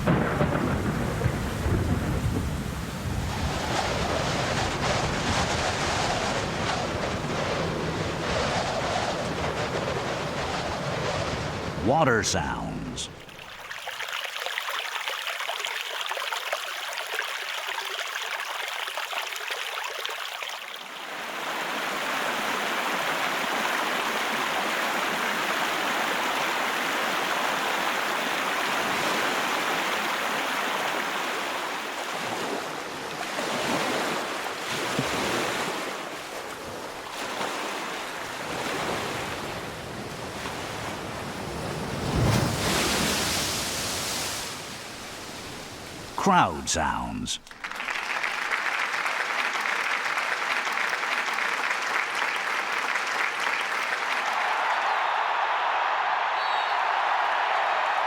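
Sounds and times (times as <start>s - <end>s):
water flowing and rushing: 11.6s - 51.3s.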